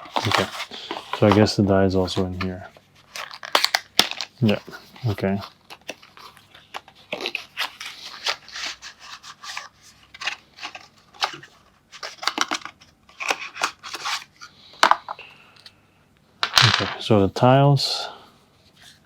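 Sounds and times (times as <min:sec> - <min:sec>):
packaging crinkling and tearing: 0:00.0 - 0:15.0.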